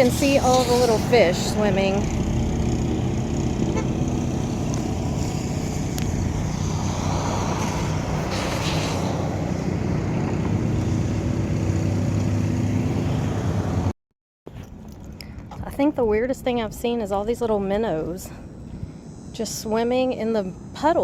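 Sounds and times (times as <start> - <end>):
hissing rush: 0.0 - 3.2, 4.1 - 11.2
vehicle engine running: 0.0 - 13.9.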